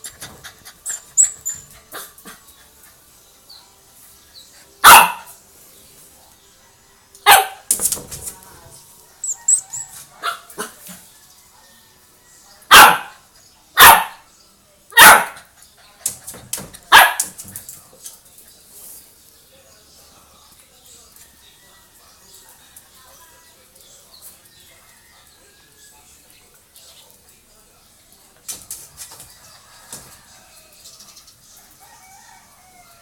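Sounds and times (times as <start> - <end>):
dog barking: 4.8 - 5.3, 7.2 - 7.7, 10.2 - 10.8, 12.7 - 13.2, 13.8 - 14.2, 15.0 - 15.5, 16.9 - 17.4.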